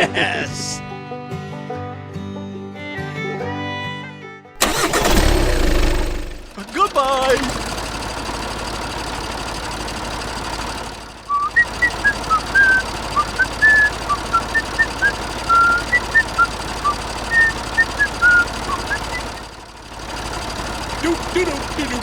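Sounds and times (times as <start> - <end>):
whistled tune: 11.3 - 19.5.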